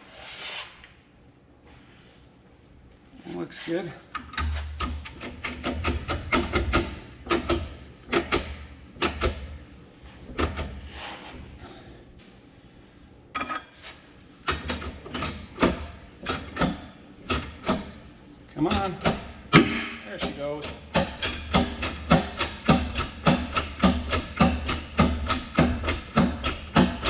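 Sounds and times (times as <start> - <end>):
metal clanks and knocks: 4.1 - 9.5, 13.4 - 13.8, 14.4 - 27.0.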